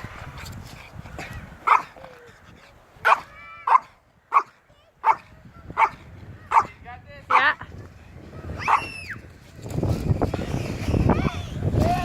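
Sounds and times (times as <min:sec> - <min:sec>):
dog barking: 0:01.7 - 0:01.9, 0:03.0 - 0:06.7.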